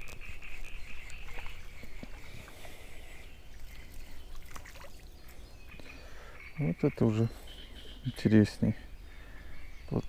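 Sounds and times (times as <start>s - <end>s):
water splashing and sloshing: 0.0s - 6.3s.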